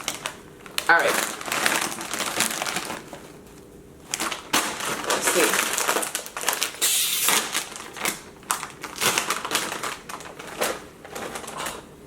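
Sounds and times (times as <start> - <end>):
cheese puffs crunching: 0.0 - 11.9.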